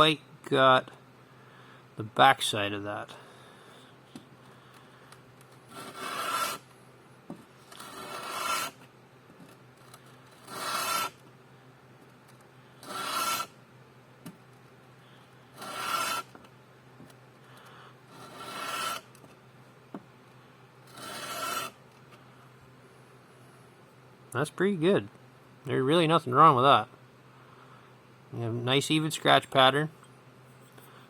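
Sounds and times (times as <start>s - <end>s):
steel scraping on wet sandpaper: 5.7s - 6.6s, 7.8s - 8.8s, 10.4s - 11.2s, 12.8s - 13.6s, 15.6s - 16.3s, 18.2s - 19.1s, 20.9s - 21.8s.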